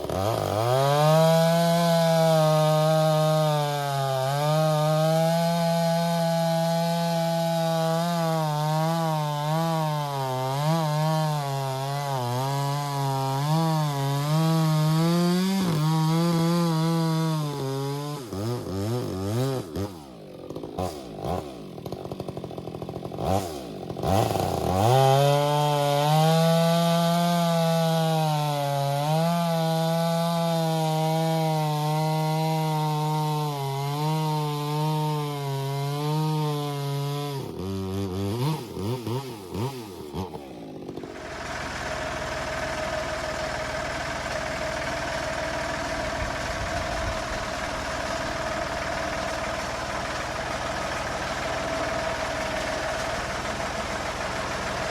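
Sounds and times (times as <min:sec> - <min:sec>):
chainsaw cutting log: 0:00.0 - 0:54.9
engine idling: 0:41.0 - 0:54.9.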